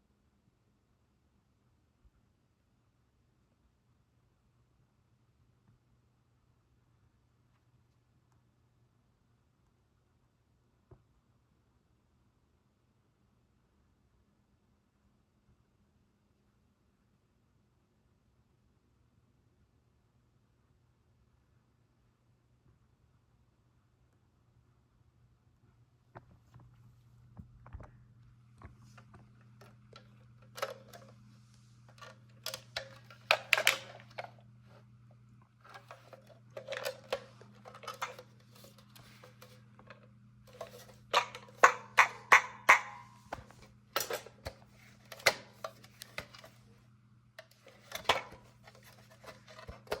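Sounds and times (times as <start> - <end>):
low electrical hum: 0.0 - 50.0
hard objects clattering: 35.7 - 46.6.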